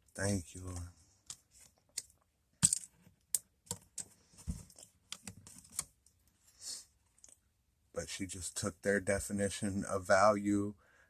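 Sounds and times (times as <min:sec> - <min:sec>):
light rustling of cards: 0:00.2 - 0:07.4.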